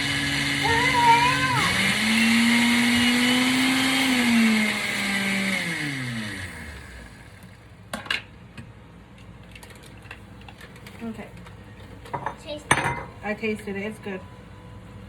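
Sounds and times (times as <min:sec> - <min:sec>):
kitchen blender running: 0:00.0 - 0:07.6.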